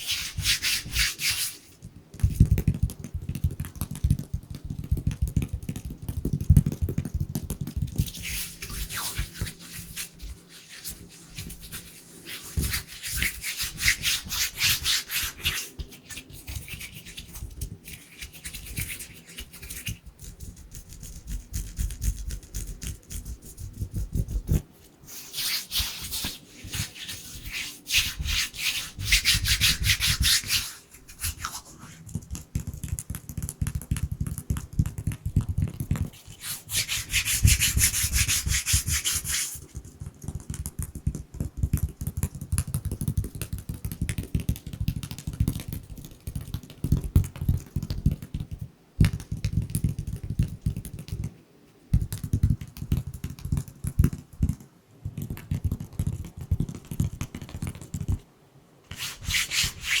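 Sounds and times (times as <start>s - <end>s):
hands rubbing together: 0.0s - 1.8s, 7.9s - 32.4s, 36.0s - 39.8s, 58.9s - 60.0s.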